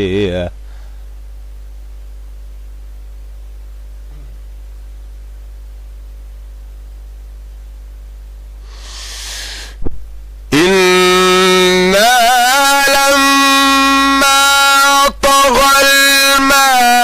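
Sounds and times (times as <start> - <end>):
low electrical hum: 0.0 - 17.0
person breathing in: 0.6 - 1.1, 8.6 - 9.8
person chanting: 10.5 - 17.0.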